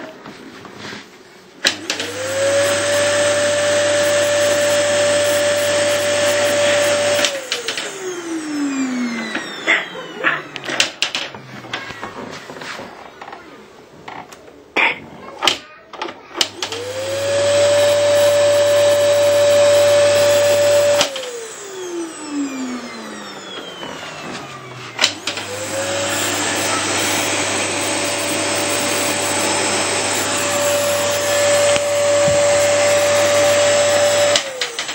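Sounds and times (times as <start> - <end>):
vacuum cleaner switch click: 1.6 - 2.2, 7.1 - 8.0, 25.0 - 26.4, 30.5 - 32.8, 34.2 - 34.9
vacuum cleaner motor whine: 1.6 - 13.4, 16.4 - 34.9.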